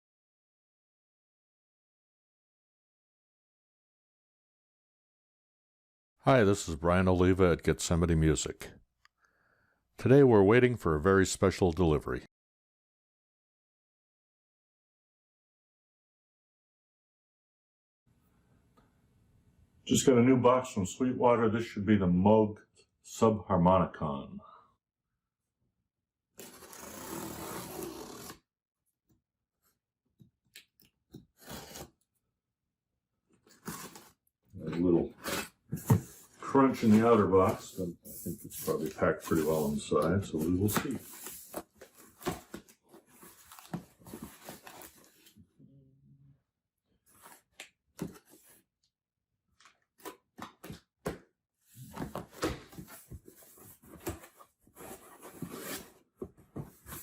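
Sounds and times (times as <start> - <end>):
cardboard scraping and rustling: 35.1 - 45.3, 51.8 - 57.0
cardboard knocks and rustles: 35.7 - 36.2.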